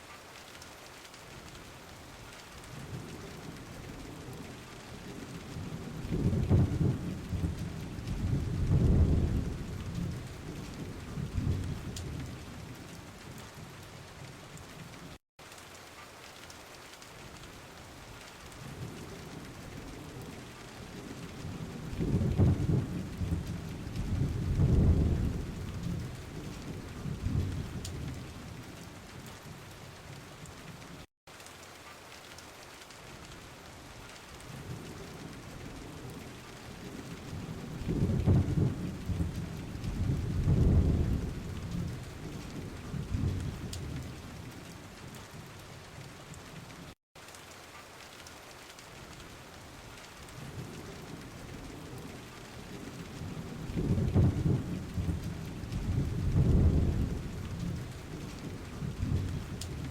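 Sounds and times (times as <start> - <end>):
steady rain: 0.0 - 59.9
rolling thunder: 5.0 - 13.0, 18.7 - 28.8, 34.6 - 44.5, 50.6 - 59.9.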